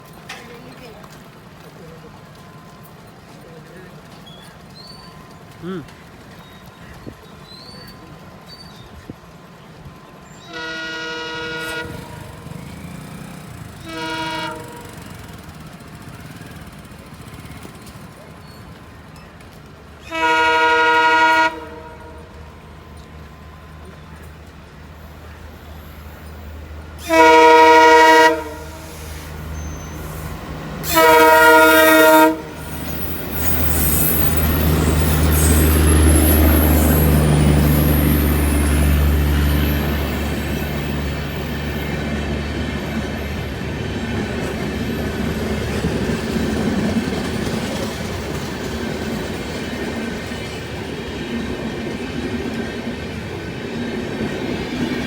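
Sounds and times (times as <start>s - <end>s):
locomotive engines rumbling: 0.0s - 55.0s
train wheels clattering on rails: 0.0s - 55.0s
locomotive horn blasts: 10.5s - 12.7s, 13.8s - 15.2s, 20.0s - 22.4s, 27.0s - 30.0s, 30.8s - 32.8s.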